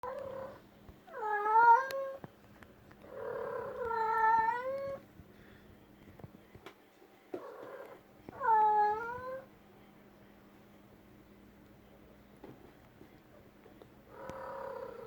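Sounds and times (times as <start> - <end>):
cat meowing: 0.0 - 2.2, 3.2 - 5.0, 8.4 - 9.4.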